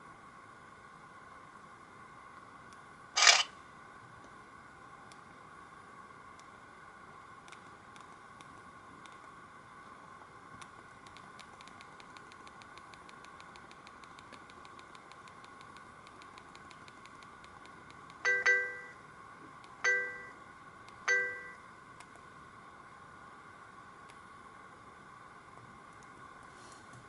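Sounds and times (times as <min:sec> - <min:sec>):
fast faint ticks: 0:10.6 - 0:18.2
phone electronic chime tones: 0:18.3 - 0:19.0, 0:19.9 - 0:20.3, 0:21.1 - 0:21.6.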